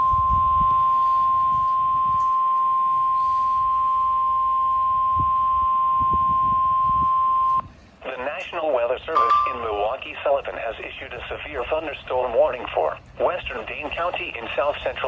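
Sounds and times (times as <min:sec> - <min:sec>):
steady radio alarm tone: 0:00.0 - 0:07.6.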